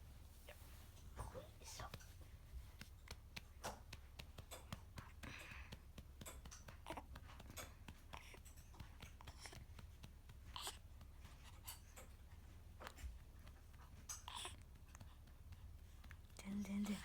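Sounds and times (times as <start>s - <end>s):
hand patting baby's back: 1.2s - 11.9s.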